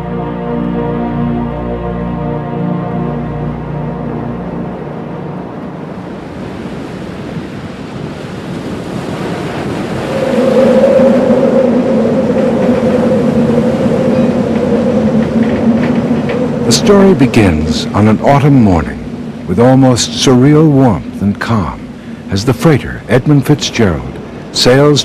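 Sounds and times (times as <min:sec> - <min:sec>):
music: 0:00.0 - 0:05.9
steady low drone: 0:00.0 - 0:06.9, 0:10.1 - 0:25.0
rushing wind and surf: 0:00.0 - 0:25.0.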